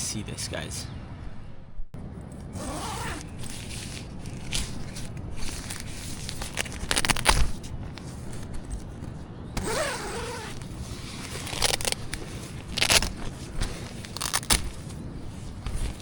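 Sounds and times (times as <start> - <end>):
scraping and rustling handling noises: 2.5 - 16.0.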